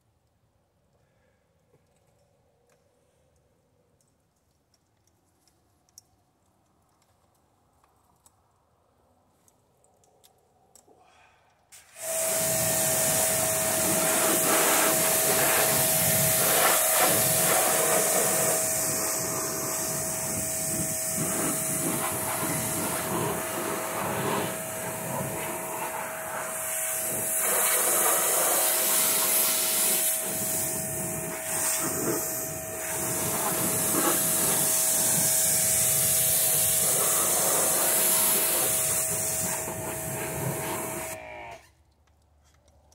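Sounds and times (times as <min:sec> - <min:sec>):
cleaning machine hissing and whining: 0:11.8 - 0:41.6.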